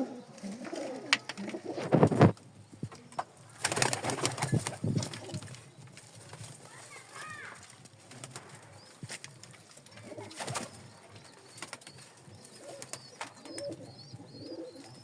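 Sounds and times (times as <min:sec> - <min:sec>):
pigeons cooing: 0:00.0 - 0:02.3, 0:09.9 - 0:15.0.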